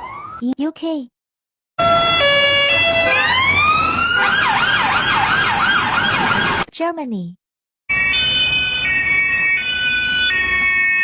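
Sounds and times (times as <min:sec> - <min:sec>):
police car siren: 0:00.0 - 0:00.4, 0:01.8 - 0:06.7, 0:07.9 - 0:11.0.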